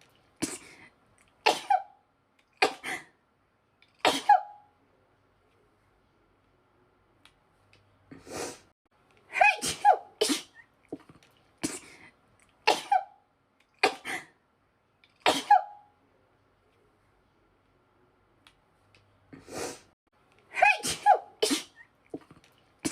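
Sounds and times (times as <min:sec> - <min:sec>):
woman sneezing: 0:01.4 - 0:01.9, 0:04.0 - 0:04.6, 0:09.4 - 0:10.6, 0:15.2 - 0:15.8, 0:20.6 - 0:21.8.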